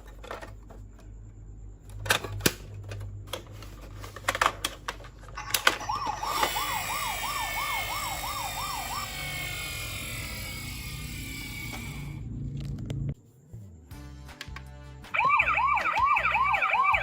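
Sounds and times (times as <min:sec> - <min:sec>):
toy electronic siren yelping: 0:05.4 - 0:12.0, 0:15.2 - 0:17.0.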